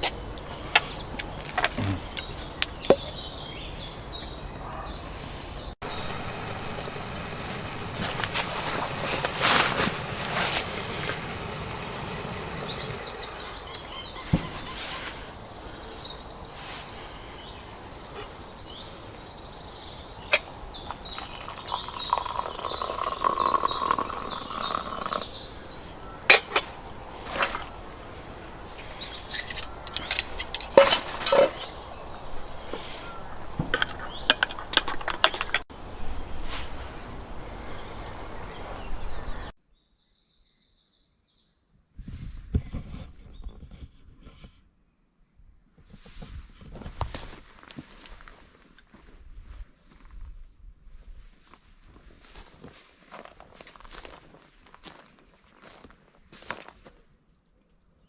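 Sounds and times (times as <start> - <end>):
birds singing: 0.0 - 41.8.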